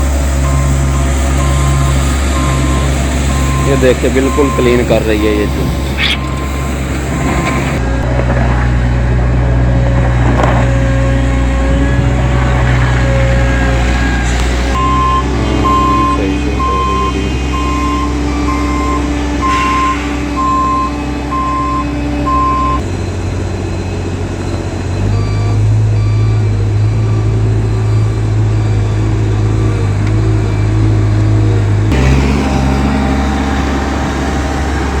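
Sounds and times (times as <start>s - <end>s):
diesel engine running: 0.0s - 35.0s
reverse alarm beeping: 0.4s - 7.8s, 13.7s - 22.8s.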